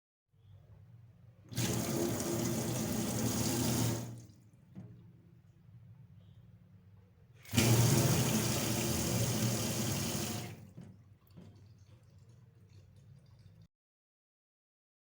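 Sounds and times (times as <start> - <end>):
tap water running into sink: 1.5 - 4.3, 7.5 - 13.6.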